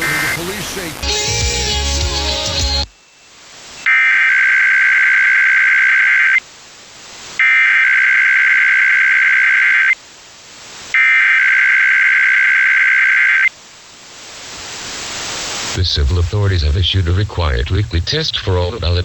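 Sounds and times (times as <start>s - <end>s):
hiss: 14.1s - 15.8s.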